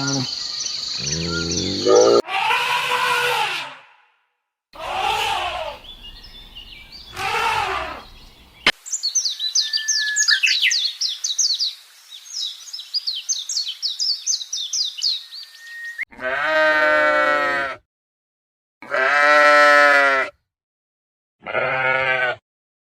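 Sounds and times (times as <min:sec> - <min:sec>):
rapid high bird chirping: 0:00.0 - 0:02.2, 0:05.0 - 0:11.2
animal calls falling in pitch: 0:01.0 - 0:02.3, 0:04.8 - 0:08.2
sheep bleating: 0:01.0 - 0:03.8, 0:04.8 - 0:08.3, 0:16.1 - 0:17.8, 0:18.8 - 0:20.4, 0:21.4 - 0:22.4.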